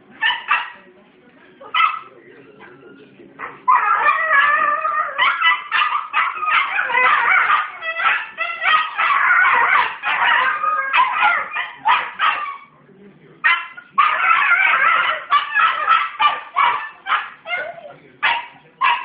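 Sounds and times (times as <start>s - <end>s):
dog howling: 3.6s - 12.7s, 14.0s - 17.9s.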